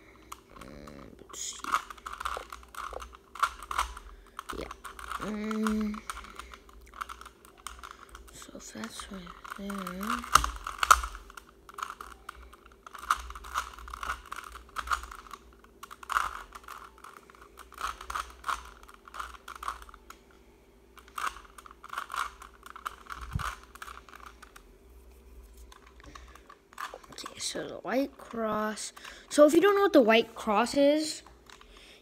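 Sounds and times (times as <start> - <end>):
puzzle cube clicking: 0.3 - 20.2.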